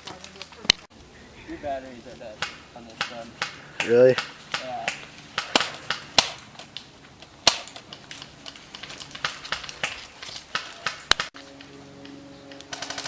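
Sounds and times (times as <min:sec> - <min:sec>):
airsoft gun shots: 0:02.4 - 0:06.4, 0:07.4 - 0:07.8.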